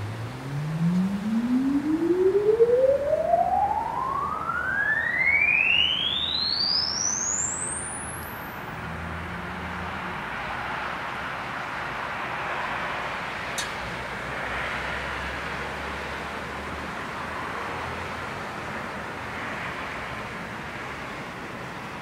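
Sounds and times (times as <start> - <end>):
rising tone: 0.0 - 8.3.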